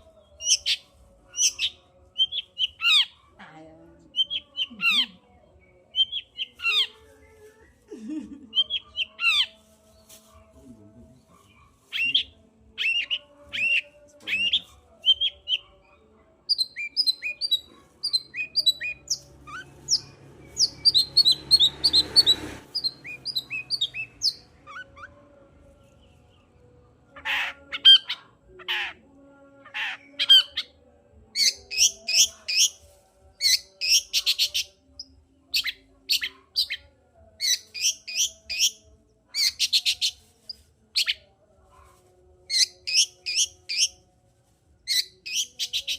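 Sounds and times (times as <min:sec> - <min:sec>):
bird chirping and whistling: 0:19.9 - 0:24.4.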